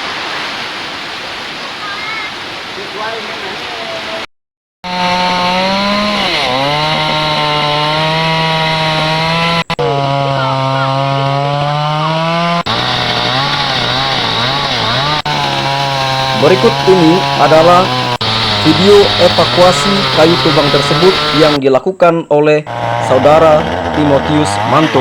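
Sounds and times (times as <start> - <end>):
chainsaw cutting wood: 4.8 - 21.6, 22.7 - 25.0.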